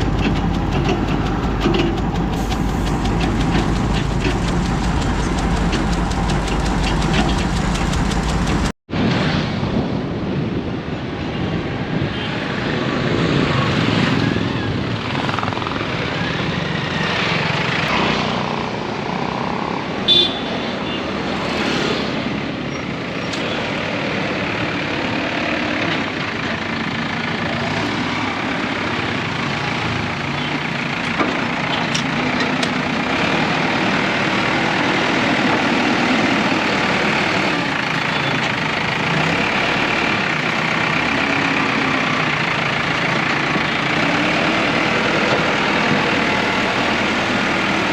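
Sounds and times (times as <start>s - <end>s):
heavy machine engine running: 0.0s - 8.8s, 23.6s - 47.9s.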